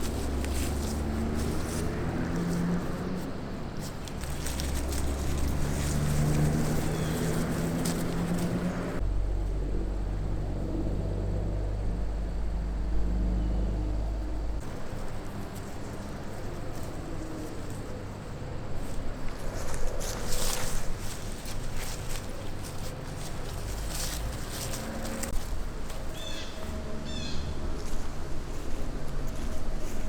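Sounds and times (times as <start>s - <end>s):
light rustling: 0.0s - 9.0s, 14.6s - 26.7s
low engine-like hum: 0.0s - 30.0s.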